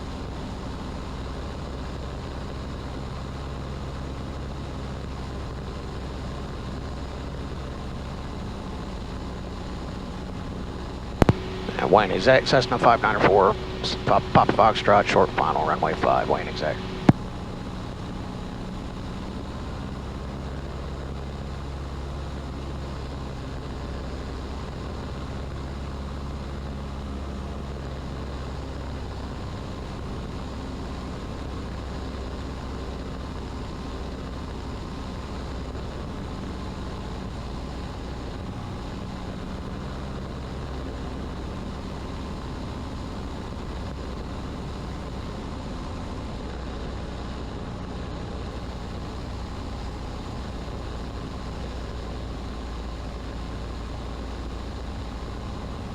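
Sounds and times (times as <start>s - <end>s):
airplane engine and propeller droning: 0.0s - 55.9s.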